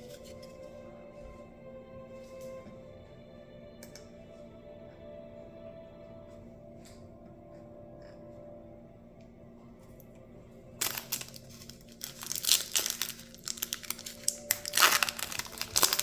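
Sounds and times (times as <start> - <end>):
wrapper tearing and crinkling: 10.8 - 16.0.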